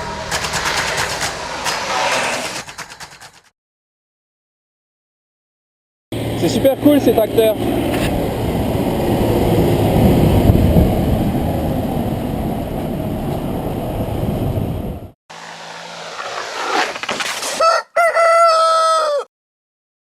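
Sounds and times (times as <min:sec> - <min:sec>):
rooster crowing: 0:17.6 - 0:19.3.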